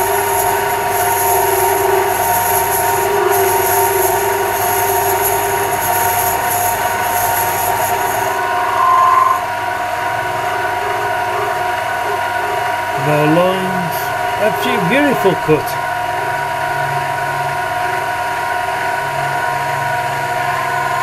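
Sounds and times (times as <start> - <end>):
lathe motor and gear whine: 0.0 - 21.0
brief louder tone: 8.2 - 12.6.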